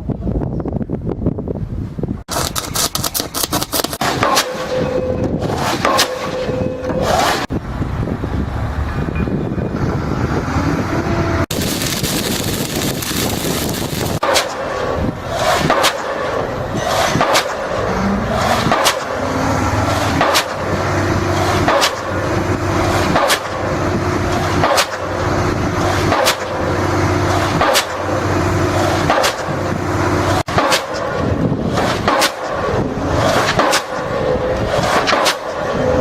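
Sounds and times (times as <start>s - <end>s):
pile hammer striking: 2.3s - 4.8s, 11.6s - 16.4s, 18.5s - 19.2s, 20.1s - 20.8s, 21.5s - 22.3s, 23.0s - 23.6s, 24.5s - 25.1s, 26.0s - 26.6s, 27.6s - 28.1s, 30.5s - 31.2s, 31.8s - 32.6s
engine hum: 6.6s - 36.0s.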